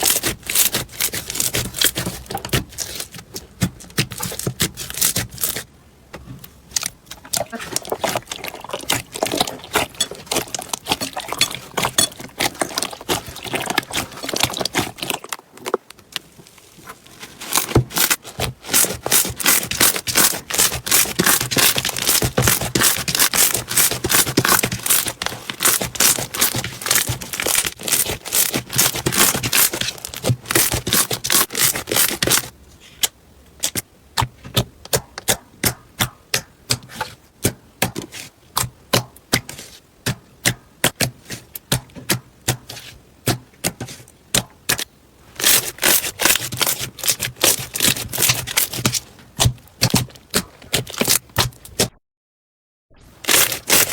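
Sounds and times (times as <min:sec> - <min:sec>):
slime crackling and popping: 0:06.7 - 0:32.5, 0:45.4 - 0:51.5, 0:53.2 - 0:53.9.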